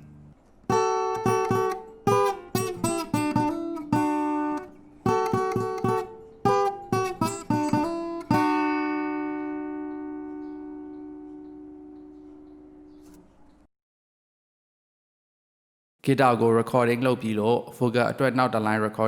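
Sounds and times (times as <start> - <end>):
acoustic guitar chords: 0.0 - 13.3.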